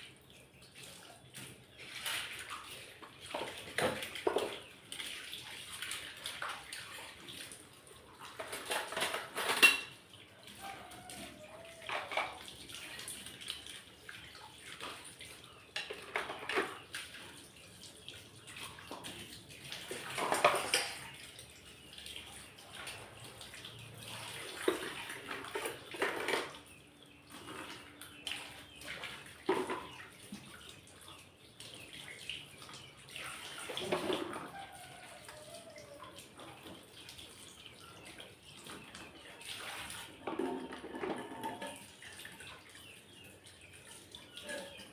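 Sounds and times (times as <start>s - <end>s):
water splashing in sink: 1.1s - 10.0s, 10.6s - 17.4s, 18.5s - 26.7s, 27.4s - 30.8s, 31.8s - 37.2s
dishes clattering: 8.4s - 10.0s, 20.1s - 21.0s, 40.2s - 41.8s.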